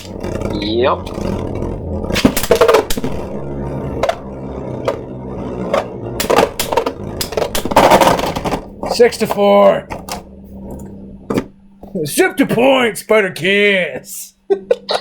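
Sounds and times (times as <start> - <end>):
spinning tops whirring: 0.0 - 11.8.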